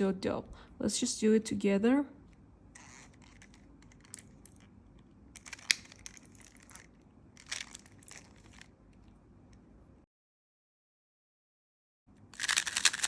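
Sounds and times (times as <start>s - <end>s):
puzzle cube clicking and rasping: 2.8s - 8.8s, 12.4s - 13.0s.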